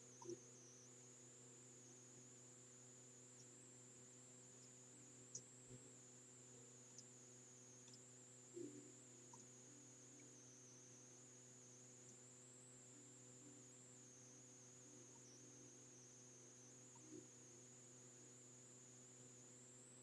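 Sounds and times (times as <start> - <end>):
faint electrical hum: 0.0 - 20.0
faint clicks: 4.6 - 5.6, 7.8 - 8.1.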